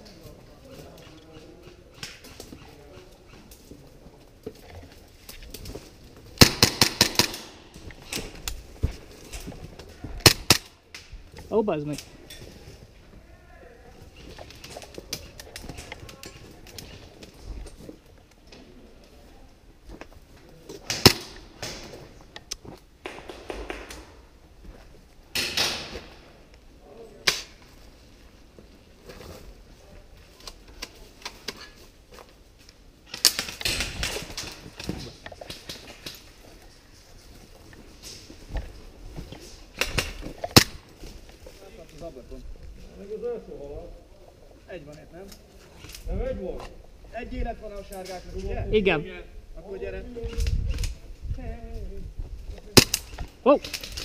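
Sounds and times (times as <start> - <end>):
airsoft gun shots: 6.4 - 7.5, 20.9 - 21.4
sharp cracks: 6.4 - 8.6, 10.2 - 11.2, 20.8 - 24.3, 25.3 - 26.2, 33.0 - 36.3, 39.7 - 40.9, 52.7 - 54.0
scuffing and rustling: 7.8 - 10.2.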